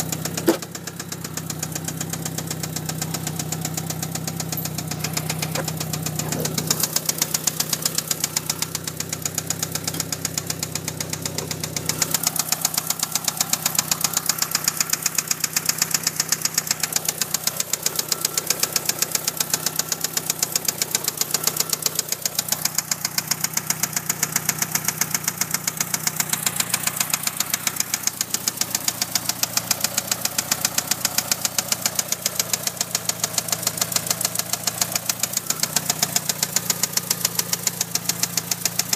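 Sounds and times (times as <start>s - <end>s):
car engine idling with ticking: 0.0s - 38.9s.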